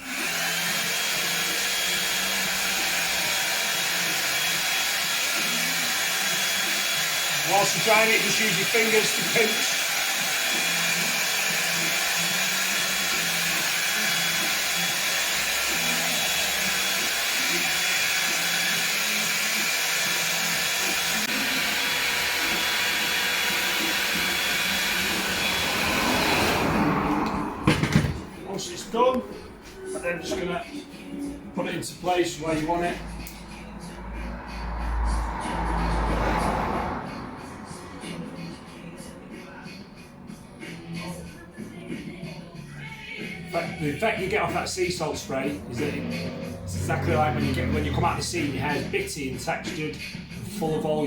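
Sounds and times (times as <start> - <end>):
hair dryer running: 0.0 - 28.5.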